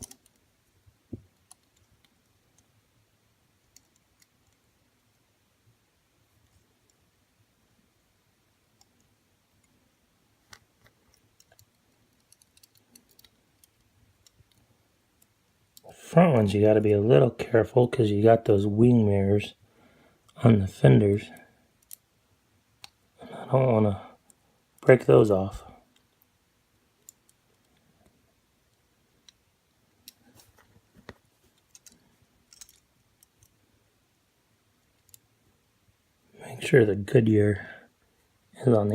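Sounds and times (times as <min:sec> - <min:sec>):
small clicks of toy car parts: 0:10.5 - 0:15.3, 0:31.5 - 0:33.6, 0:35.0 - 0:35.3.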